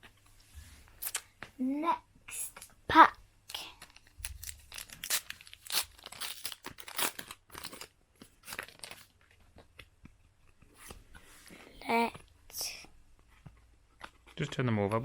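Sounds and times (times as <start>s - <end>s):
foil wrapper tearing and crinkling: 3.8s - 9.2s.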